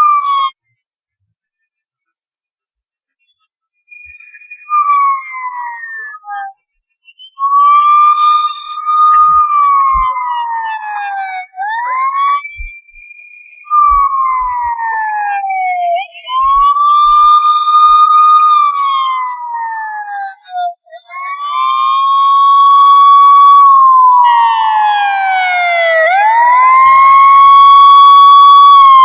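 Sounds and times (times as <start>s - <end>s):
police siren wailing: 7.4s - 12.7s, 13.7s - 29.0s.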